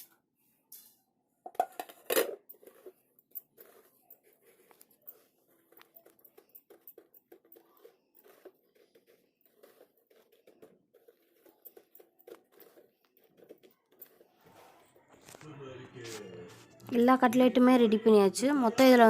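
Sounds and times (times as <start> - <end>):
crinkly rustling: 8.2 - 16.9.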